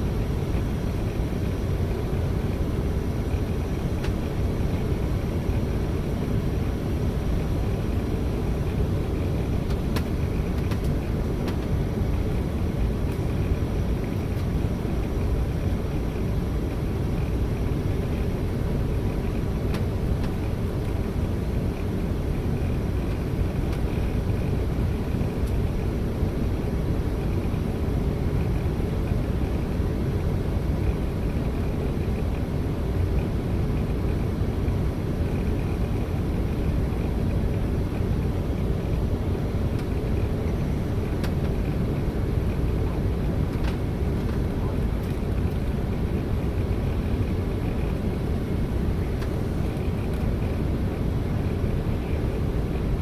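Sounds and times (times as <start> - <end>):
jet cabin engine rumble: 0.0 - 53.0.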